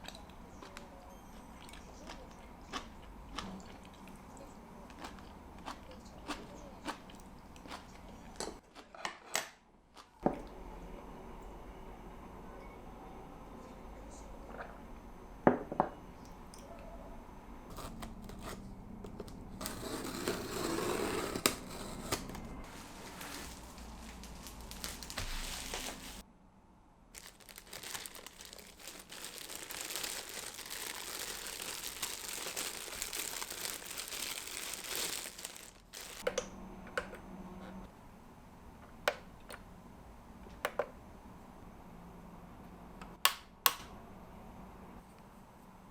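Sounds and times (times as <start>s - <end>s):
packaging crinkling and tearing: 17.7s - 26.2s, 27.2s - 36.3s.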